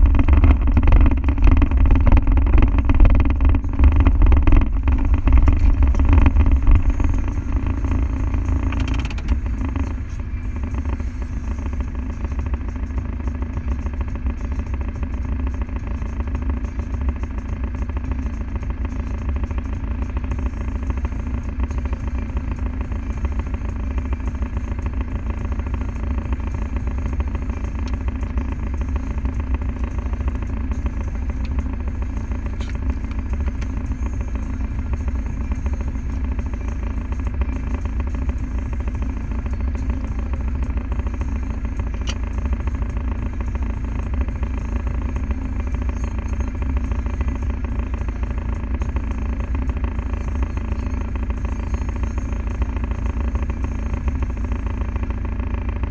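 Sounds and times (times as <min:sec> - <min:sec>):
diesel engine droning: 0:00.0 - 0:55.9.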